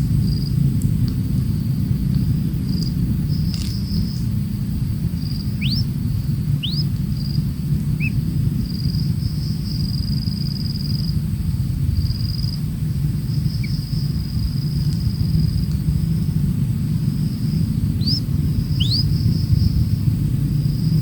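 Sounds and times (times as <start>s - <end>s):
insect buzz: 0.0s - 21.0s
steady low rumble: 0.0s - 21.0s
rising whistled bird calls: 5.3s - 5.9s, 6.5s - 6.9s, 8.0s - 8.2s, 18.0s - 19.7s.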